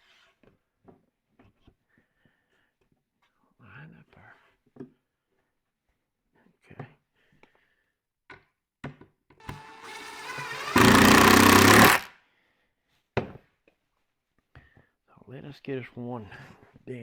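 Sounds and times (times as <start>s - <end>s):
power driver whining: 9.4s - 12.1s.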